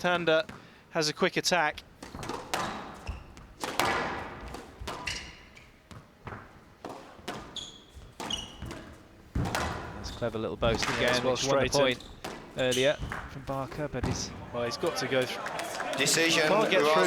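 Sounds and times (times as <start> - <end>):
shoes squeaking on court floor: 0.0 - 0.7, 1.7 - 17.0
squash ball hitting rackets and walls: 1.8 - 14.6.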